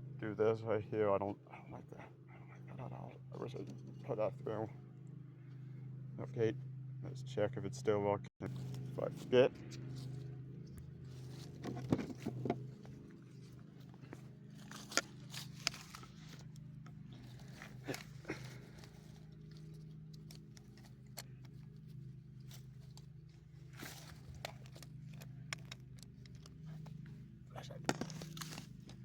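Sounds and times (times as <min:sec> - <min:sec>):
steady low hum: 0:00.0 - 0:29.0
handling clicks and scrapes: 0:08.4 - 0:29.0.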